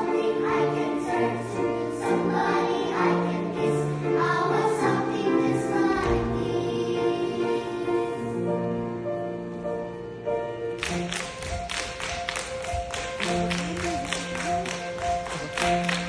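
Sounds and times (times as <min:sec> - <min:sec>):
choir singing chords: 0:00.0 - 0:10.4.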